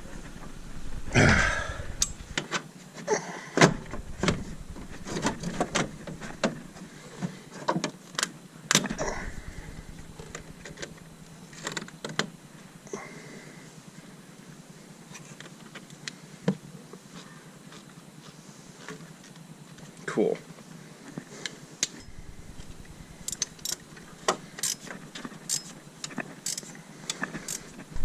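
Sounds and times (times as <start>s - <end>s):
metal hand tools clicking: 2.0s - 2.3s, 23.3s - 23.8s, 24.6s - 25.8s, 26.4s - 27.7s.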